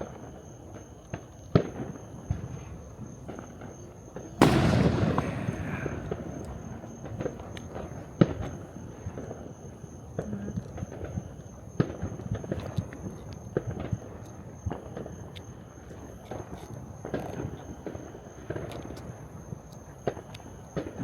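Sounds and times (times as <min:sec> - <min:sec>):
fireworks popping and crackling: 0:04.4 - 0:09.4.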